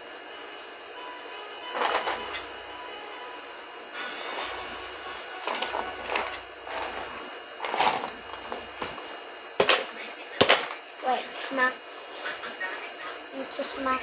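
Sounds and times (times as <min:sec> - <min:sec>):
toy machine rattling and scraping: 0:01.7 - 0:02.4, 0:05.4 - 0:08.6.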